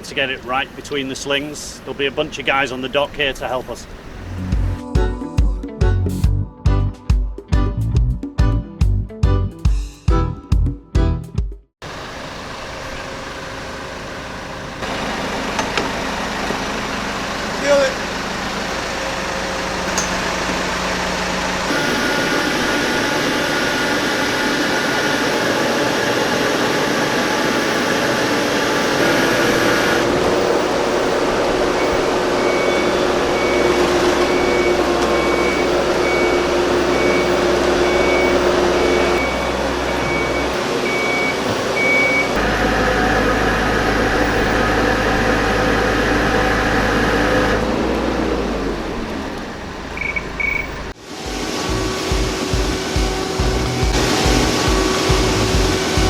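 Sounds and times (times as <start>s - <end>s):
engines running steadily: 0.0s - 4.9s, 11.8s - 56.0s
short warning beeps: 31.8s - 42.4s, 50.0s - 50.8s.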